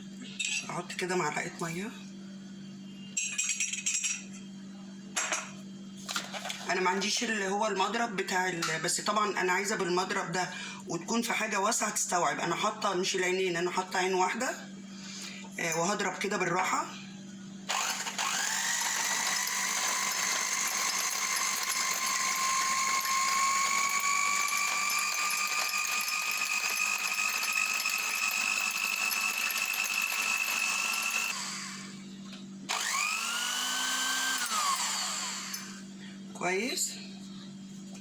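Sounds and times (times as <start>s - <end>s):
electric hand mixer whining: 17.7s - 32.0s, 32.7s - 36.0s.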